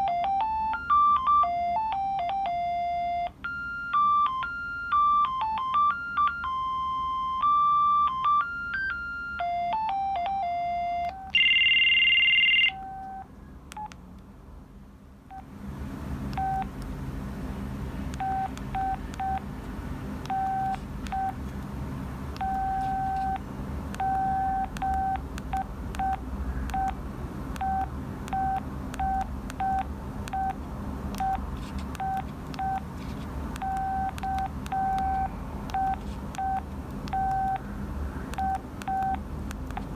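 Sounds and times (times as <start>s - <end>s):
cellphone beeping ringtone melody: 0.0s - 13.2s, 18.2s - 19.4s, 20.3s - 21.4s, 22.4s - 23.4s, 24.0s - 26.2s, 33.6s - 36.6s, 37.2s - 37.6s
background noise: 0.0s - 39.9s
short and long beeps: 33.6s - 37.6s.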